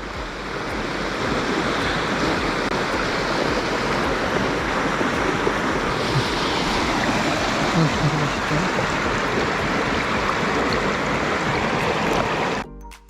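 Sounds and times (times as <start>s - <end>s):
river water rushing: 0.0s - 12.6s.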